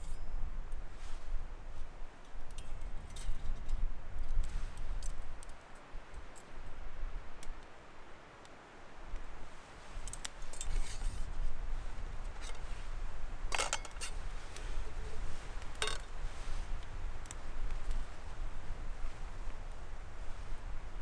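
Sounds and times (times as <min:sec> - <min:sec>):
metal cookware clinking: 0:13.6 - 0:14.1, 0:15.8 - 0:16.0.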